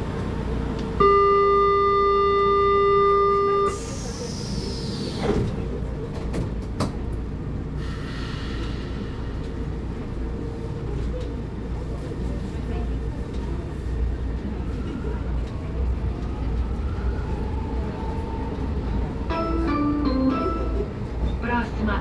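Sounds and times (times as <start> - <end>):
train running noise: 3.7 - 22.0.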